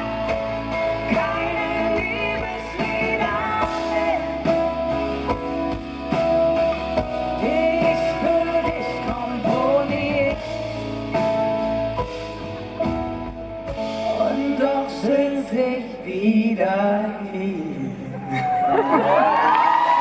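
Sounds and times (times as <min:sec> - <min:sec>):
low bass: 0:00.0 - 0:18.3
drums: 0:00.0 - 0:20.0
guitar: 0:00.0 - 0:20.0
people singing: 0:00.8 - 0:04.5, 0:07.4 - 0:10.5.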